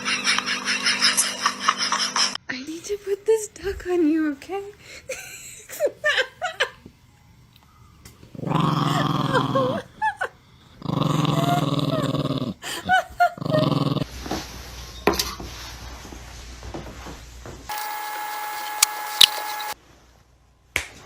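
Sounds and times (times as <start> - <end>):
dog growling: 8.3 - 9.9, 10.6 - 12.6, 13.2 - 14.1.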